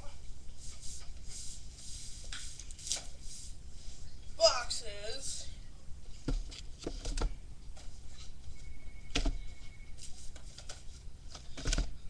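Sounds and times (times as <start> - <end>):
cardboard boxes knocking and thumping: 6.2 - 7.4, 9.1 - 9.6.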